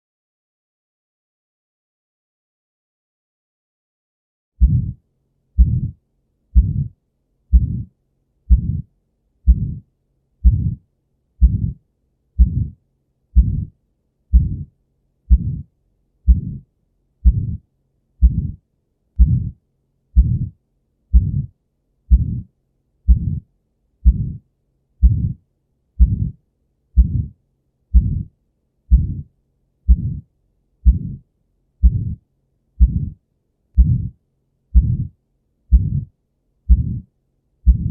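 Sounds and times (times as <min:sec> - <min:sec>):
heartbeat with murmur: 0:04.6 - 0:05.0, 0:05.6 - 0:06.0, 0:06.6 - 0:06.9, 0:07.5 - 0:07.9, 0:08.5 - 0:08.9, 0:09.5 - 0:10.8, 0:11.4 - 0:11.8, 0:12.4 - 0:12.8, 0:13.4 - 0:13.7, 0:14.3 - 0:14.7, 0:15.3 - 0:15.7, 0:16.3 - 0:16.6, 0:17.2 - 0:17.6, 0:18.2 - 0:18.6, 0:19.2 - 0:19.6, 0:20.2 - 0:21.5, 0:22.1 - 0:22.5, 0:23.1 - 0:23.4, 0:24.0 - 0:24.4, 0:25.0 - 0:25.4, 0:26.0 - 0:26.4, 0:27.0 - 0:28.3, 0:28.9 - 0:29.3, 0:29.9 - 0:31.2, 0:31.8 - 0:32.2, 0:32.8 - 0:33.2, 0:33.8 - 0:36.1, 0:36.7 - 0:37.9.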